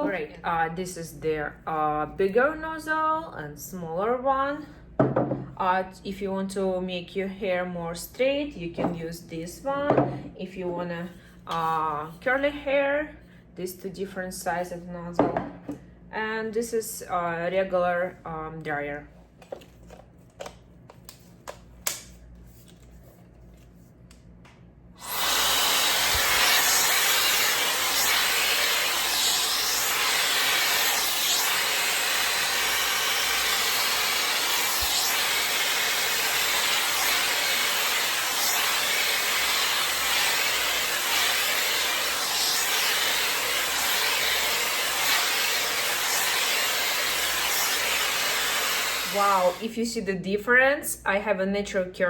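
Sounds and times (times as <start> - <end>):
hair dryer blowing air: 25.0 - 49.7.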